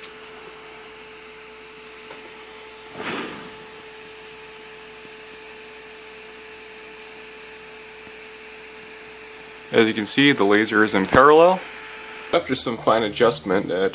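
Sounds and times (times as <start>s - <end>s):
cooling fan humming: 0.0s - 13.9s
brief burst of noise: 2.9s - 3.8s.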